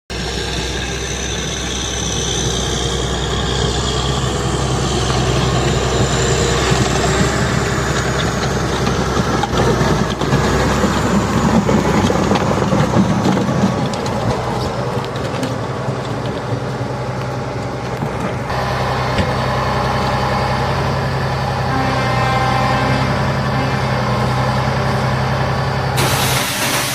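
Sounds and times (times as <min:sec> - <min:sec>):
diesel engine idling: 0:00.1 - 0:26.9
broad hiss: 0:26.0 - 0:26.9.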